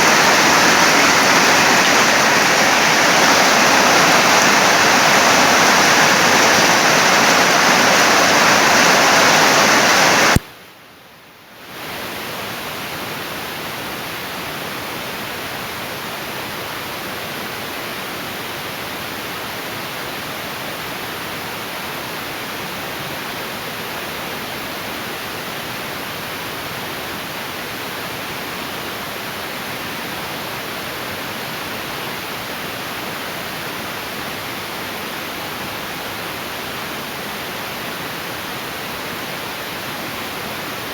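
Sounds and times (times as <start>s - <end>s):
heavy rain pouring: 0.0s - 10.4s
quiet steady hiss: 0.0s - 11.5s.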